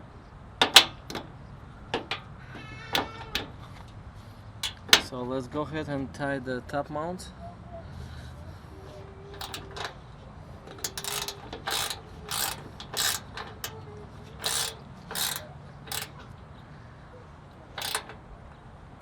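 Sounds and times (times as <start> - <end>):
ratchet wrench clicking: 0.6 - 1.3, 2.0 - 3.9, 4.6 - 5.1, 9.4 - 9.9, 10.7 - 16.3, 17.8 - 18.2.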